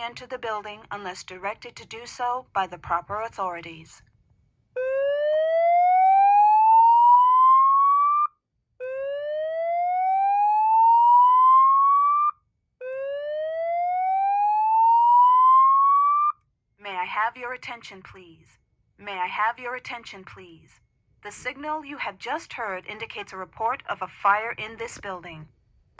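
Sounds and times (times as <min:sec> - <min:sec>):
slow whoop alarm tone: 0:04.8 - 0:16.4.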